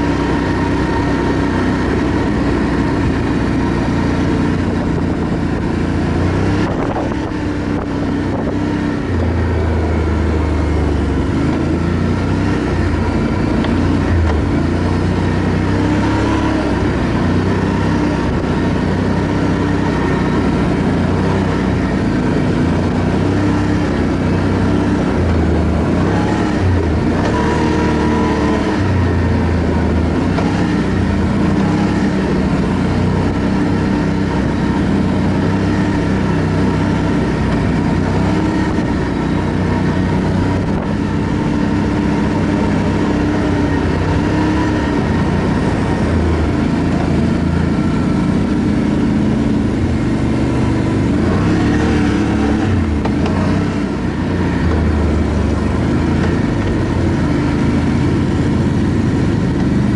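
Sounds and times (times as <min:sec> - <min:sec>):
atv engine running: 0:00.0 - 0:59.9.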